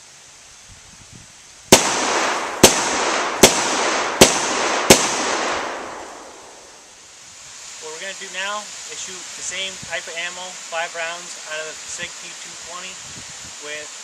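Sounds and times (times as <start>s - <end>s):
pistol shots with echo: 1.7s - 6.8s.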